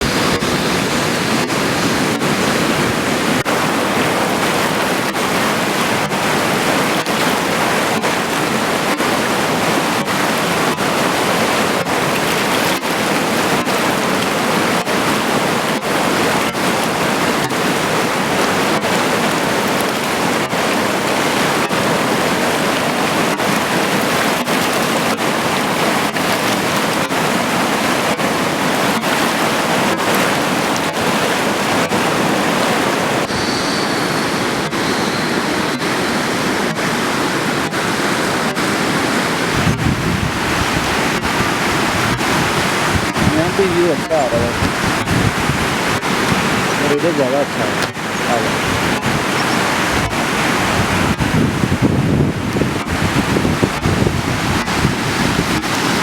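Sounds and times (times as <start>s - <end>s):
river rushing: 0.0s - 56.0s.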